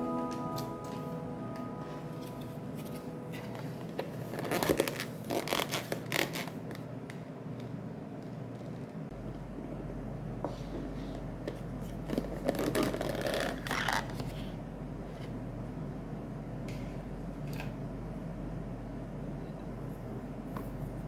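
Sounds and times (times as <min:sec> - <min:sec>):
steady low hum: 0:00.0 - 0:21.0
rustling and crinkling: 0:02.8 - 0:06.8.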